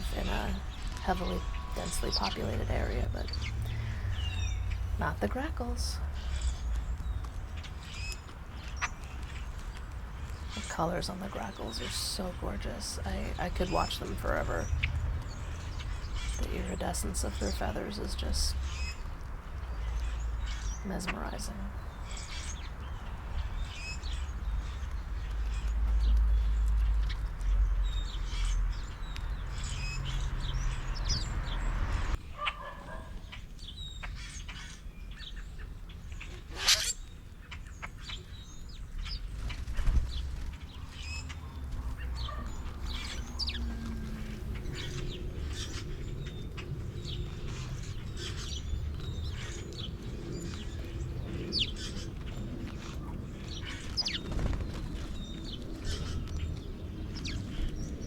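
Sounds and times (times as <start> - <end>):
birds chirping: 0.0 - 58.0
low rumble: 39.1 - 58.0.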